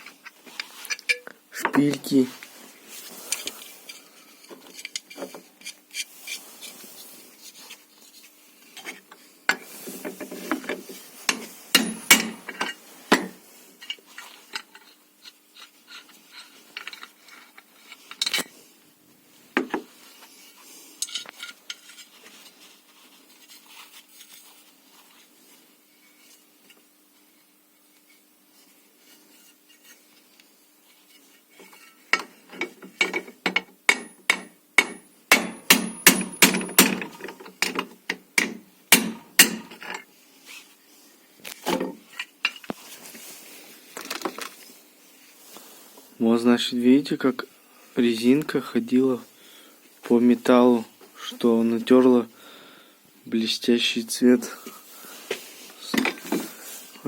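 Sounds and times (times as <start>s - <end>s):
hammer striking steel: 11.8s - 12.4s, 33.9s - 37.0s, 38.4s - 39.7s.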